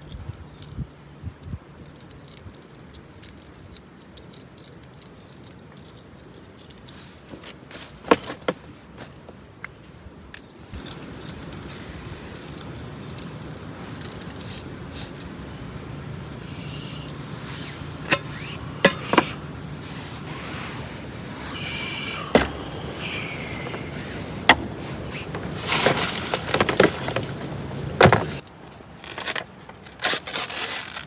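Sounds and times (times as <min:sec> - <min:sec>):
steady hiss: 0:16.4 - 0:26.1
objects clinking and rattling: 0:22.3 - 0:28.4.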